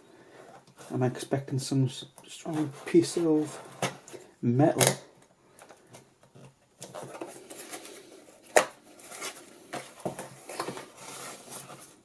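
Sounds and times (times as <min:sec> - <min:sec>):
packaging rustling and scraping: 0:02.2 - 0:04.3, 0:05.5 - 0:12.0.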